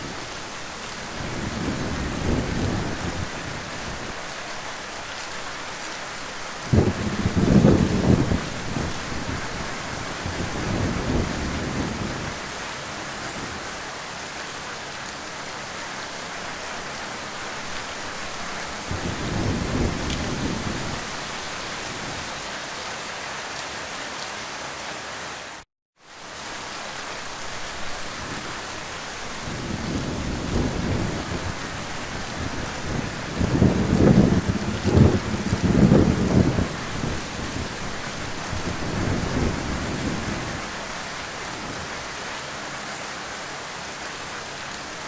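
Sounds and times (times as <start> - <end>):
heavy rain falling: 0.0 - 45.0
low thunder rumbles: 1.0 - 4.1, 6.6 - 12.6, 18.8 - 22.2, 29.4 - 41.9.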